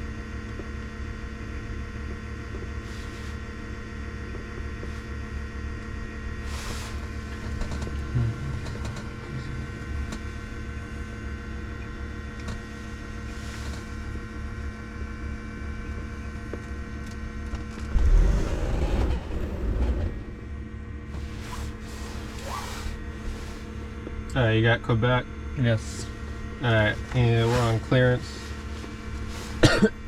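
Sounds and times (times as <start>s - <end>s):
electrical hum and whine: 0.0s - 30.0s
aircraft engine drone: 0.8s - 30.0s
louder rumble: 17.7s - 23.9s.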